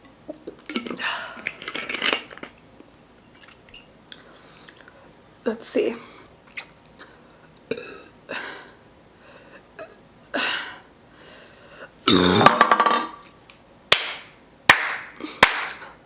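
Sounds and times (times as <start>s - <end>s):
short breaths: 11.1s - 11.9s
woman burping: 12.1s - 13.2s.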